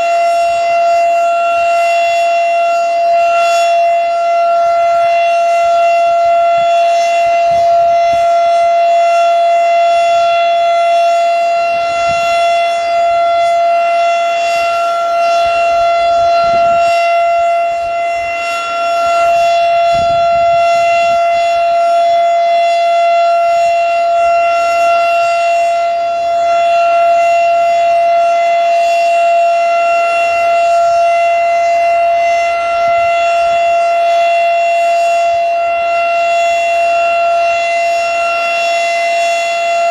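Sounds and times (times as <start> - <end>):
warning siren steady tone: 0.0 - 39.9
wind gusts on microphone: 15.5 - 17.2, 19.6 - 21.2.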